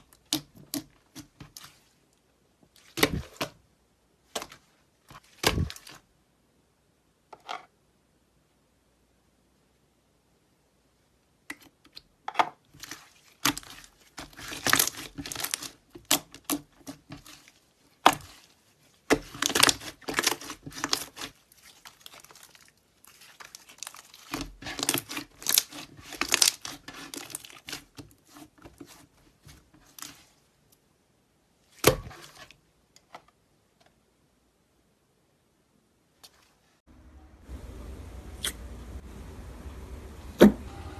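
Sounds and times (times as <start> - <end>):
slime crackling and popping: 12.8 - 17.4, 19.1 - 28.0
slime snaps: 38.4 - 38.6.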